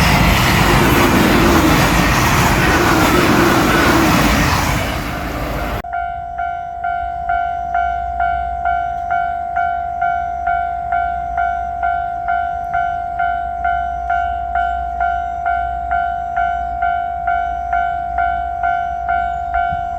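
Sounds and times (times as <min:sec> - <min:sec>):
passing train rushing: 0:00.0 - 0:19.9
level-crossing warning bell: 0:05.5 - 0:19.9.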